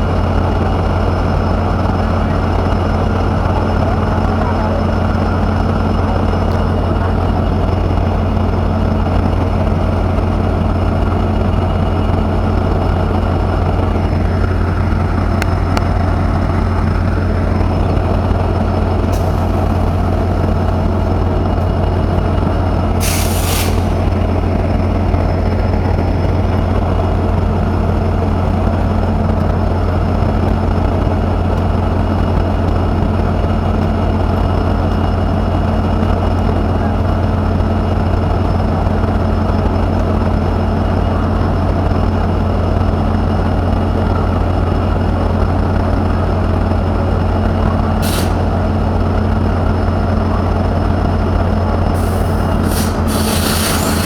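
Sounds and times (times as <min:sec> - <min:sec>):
electric locomotive humming: 0:00.0 - 0:54.0
hiss of released air: 0:23.0 - 0:24.2, 0:48.0 - 0:48.5, 0:52.0 - 0:54.0.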